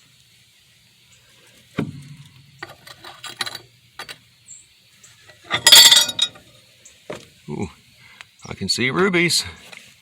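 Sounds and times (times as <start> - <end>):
glasses clinking: 5.5 - 6.4.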